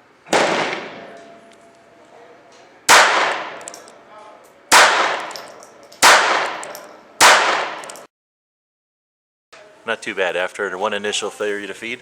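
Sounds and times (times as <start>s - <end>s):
pistol shots ringing: 0.3s - 1.5s, 2.9s - 4.0s, 4.7s - 8.1s.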